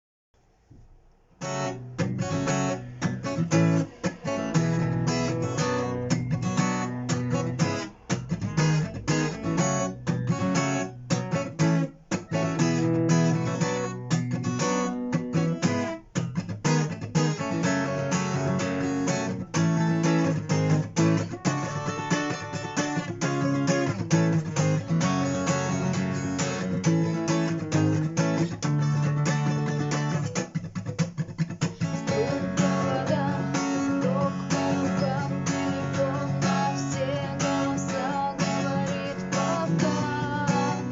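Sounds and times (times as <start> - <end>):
percussive strokes on guitar strings: 1.4 - 10.4
acoustic guitar strumming: 1.4 - 40.9.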